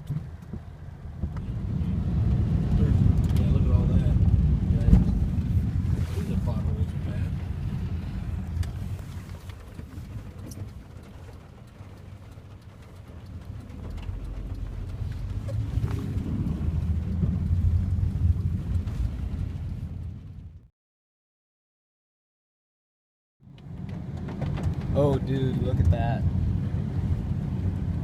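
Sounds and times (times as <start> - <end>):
deep low rumble: 0.0 - 20.7
heavy rain falling: 1.6 - 20.1.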